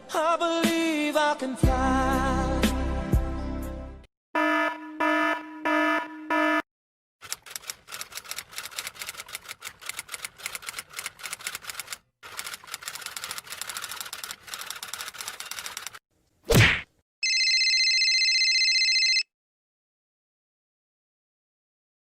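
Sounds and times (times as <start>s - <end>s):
electronic alarm beeps: 4.4s - 6.6s
keyboard typing clatter: 7.2s - 16.0s.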